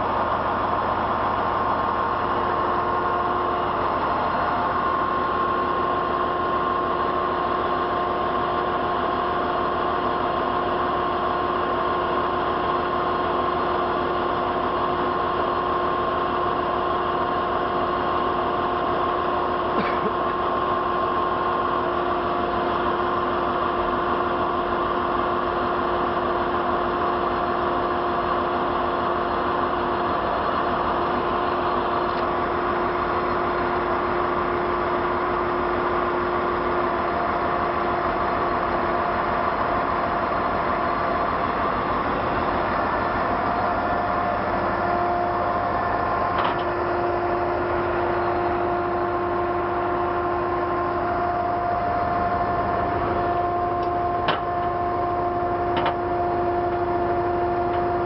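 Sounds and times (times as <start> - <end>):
truck engine running: 0.0 - 58.0.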